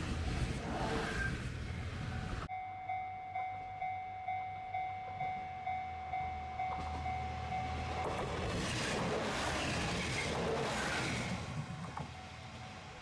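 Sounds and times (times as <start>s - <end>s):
level-crossing warning bell: 1.7s - 8.4s
train running past: 3.8s - 13.0s.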